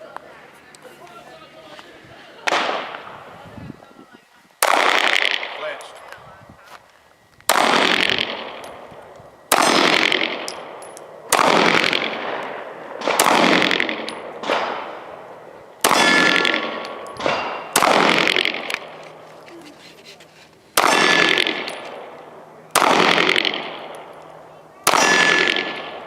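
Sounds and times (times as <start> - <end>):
gunshots echoing: 2.4 - 3.2, 4.6 - 6.0, 7.5 - 19.2, 20.7 - 26.0
faint gunshot: 2.5 - 3.0, 20.8 - 21.7, 22.8 - 23.9, 24.8 - 26.0.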